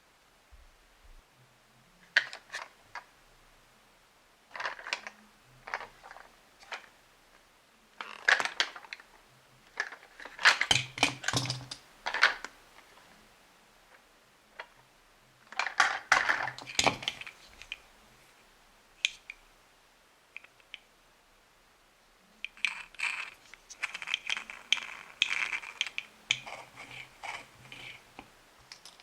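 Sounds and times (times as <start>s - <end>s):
plastic toy parts clicking: 2.2s - 3.0s, 4.5s - 5.1s, 8.0s - 9.0s, 9.8s - 12.5s, 15.5s - 17.8s, 22.4s - 28.0s, 28.7s - 29.0s.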